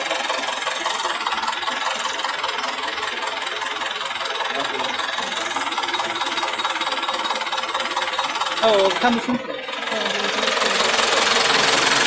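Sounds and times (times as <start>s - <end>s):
engine droning: 0.0s - 12.0s.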